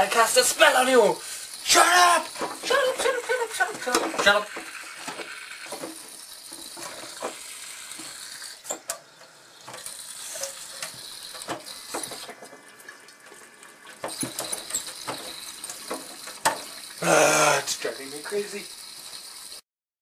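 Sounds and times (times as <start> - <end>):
faint water hiss: 0.0 - 19.6
sink clicking and tapping: 1.8 - 12.7, 13.9 - 17.0.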